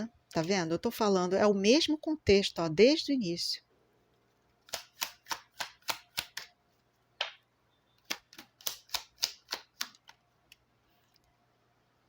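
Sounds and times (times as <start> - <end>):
playing cards snapping: 4.7 - 6.5, 8.0 - 10.2.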